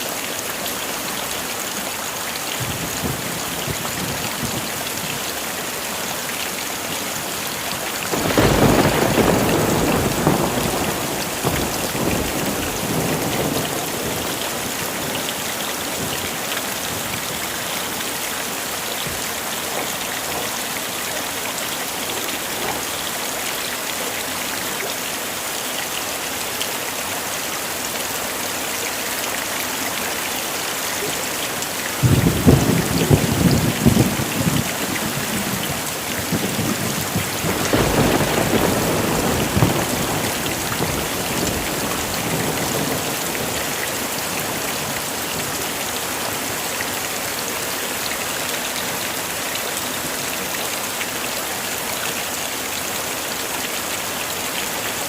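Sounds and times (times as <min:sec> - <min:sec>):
heavy rain: 0:00.0 - 0:55.0
thunderclap rumbling: 0:08.1 - 0:15.0, 0:32.0 - 0:44.9.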